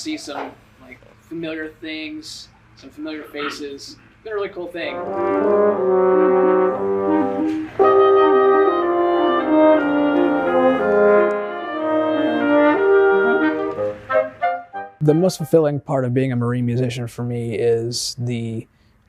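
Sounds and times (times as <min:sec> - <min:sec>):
brass ensemble playing chords: 0:04.3 - 0:15.8.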